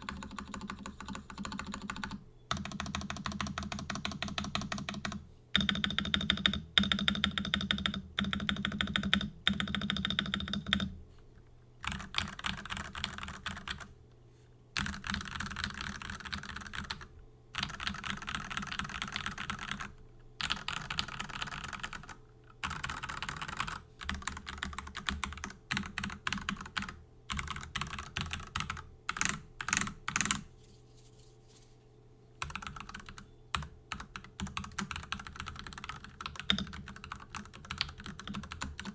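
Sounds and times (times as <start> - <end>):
typing on mechanical keyboard: 0.0 - 10.9, 11.8 - 13.9, 14.8 - 30.5, 32.4 - 38.9.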